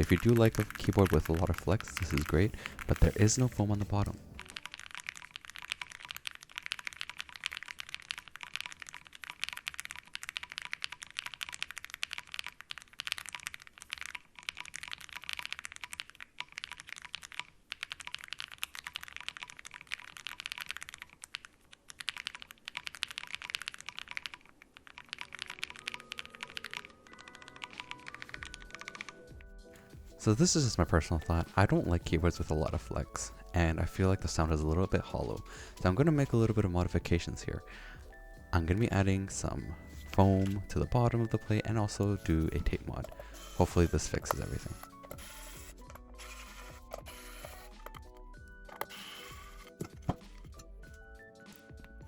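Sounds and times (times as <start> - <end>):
mechanical keyboard typing: 0.0 - 29.3, 38.6 - 50.6.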